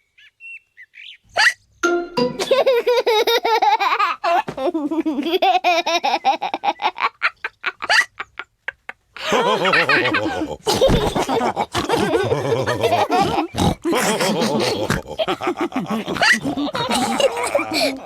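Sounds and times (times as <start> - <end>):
cartoon characters laughing: 2.4 - 18.0
pig snorts and oinks: 10.2 - 17.9.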